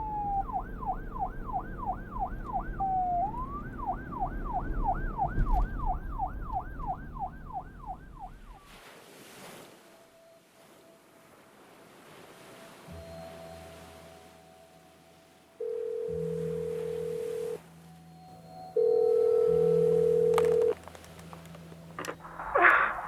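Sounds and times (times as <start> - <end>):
siren yelping: 0.0 - 8.6, 19.1 - 23.0
low traffic rumble: 18.3 - 23.0.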